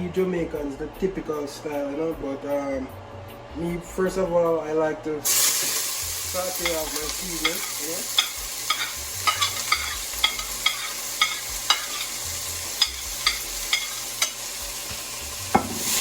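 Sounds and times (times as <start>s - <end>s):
vegetables sizzling in a pot: 5.2s - 16.0s.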